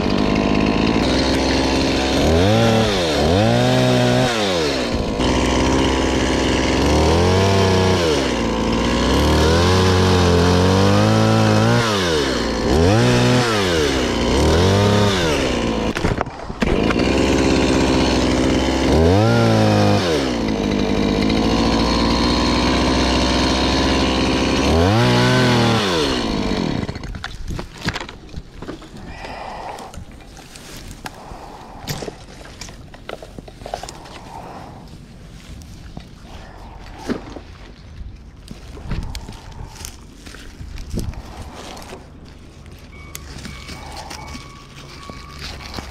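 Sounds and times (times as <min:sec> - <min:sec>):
chainsaw engine revving: 0:00.0 - 0:27.2, 0:39.0 - 0:45.9.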